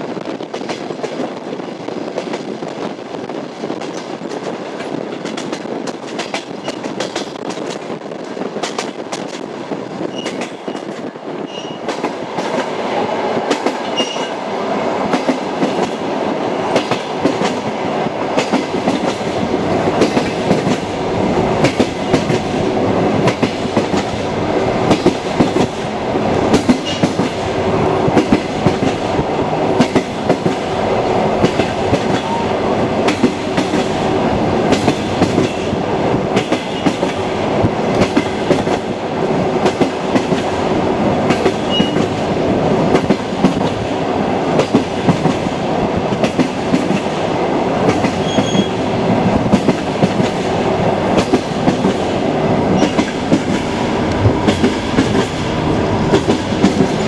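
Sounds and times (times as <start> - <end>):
train rumbling on track: 0.0 - 57.0.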